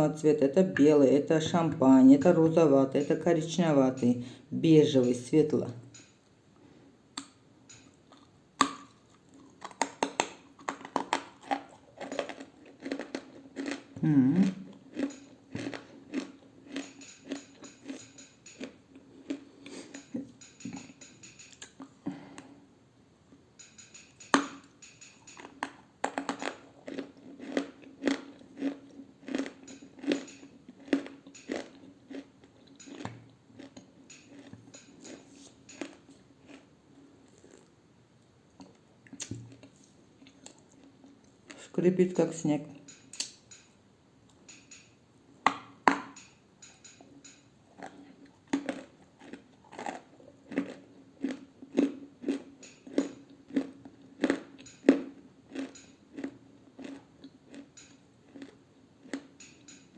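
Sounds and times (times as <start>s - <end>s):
crisp crackling chewing: 8.9s - 20.2s, 25.3s - 37.8s, 47.7s - 59.4s.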